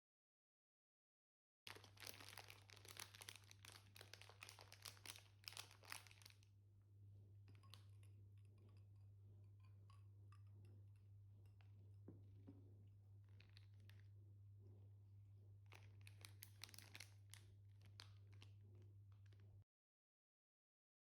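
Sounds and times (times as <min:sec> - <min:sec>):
crinkling and crunching: 0:01.7 - 0:06.4, 0:07.5 - 0:08.1, 0:13.2 - 0:14.1, 0:15.6 - 0:19.6
steady low hum: 0:06.4 - 0:16.2.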